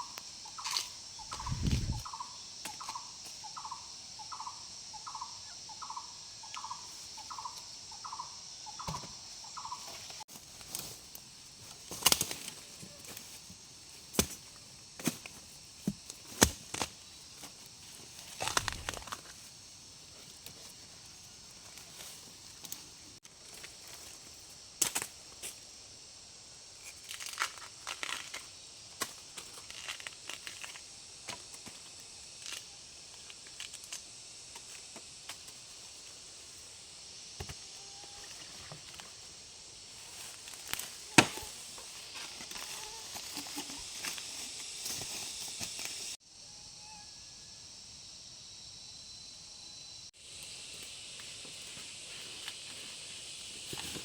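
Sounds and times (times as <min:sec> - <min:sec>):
crackling and rustling with snaps: 0:10.3 - 0:13.4, 0:18.2 - 0:19.4, 0:26.8 - 0:30.8
steady high hiss: 0:13.0 - 0:46.5, 0:47.2 - 0:54.0.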